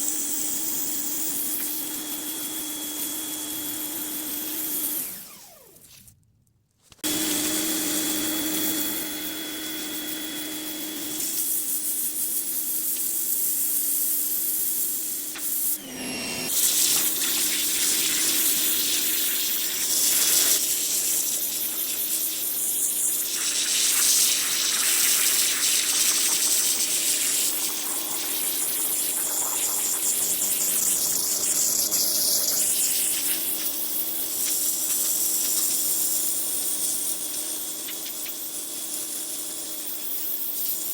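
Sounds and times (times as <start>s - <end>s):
pressure washer spraying: 15.2s - 40.9s.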